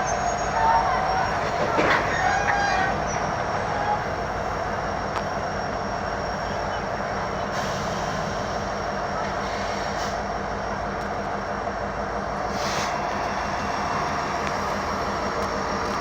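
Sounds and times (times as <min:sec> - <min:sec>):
diesel locomotive engines humming: 0:00.0 - 0:16.0.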